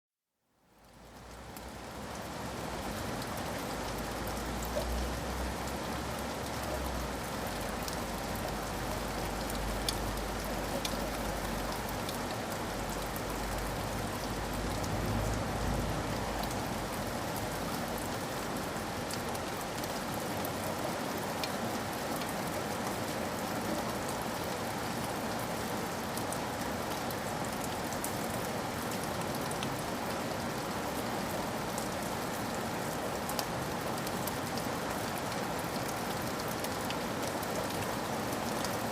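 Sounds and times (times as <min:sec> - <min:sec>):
steady rain falling: 0:00.6 - 0:38.9
small drip ticks: 0:02.8 - 0:15.4.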